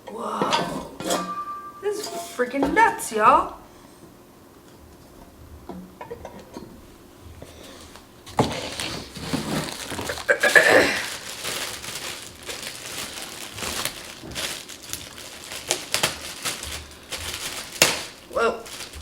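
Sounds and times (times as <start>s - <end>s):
plastic packaging crinkling: 7.7s - 19.0s.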